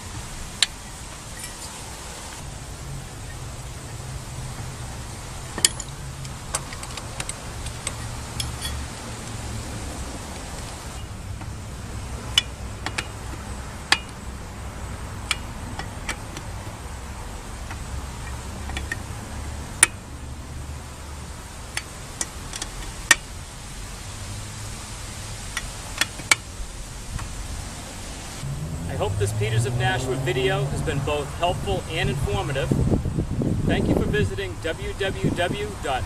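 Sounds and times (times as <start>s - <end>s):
metallic clinks of lug wrench: 0.6s - 1.8s, 5.5s - 8.9s, 12.3s - 14.2s, 17.6s - 19.1s.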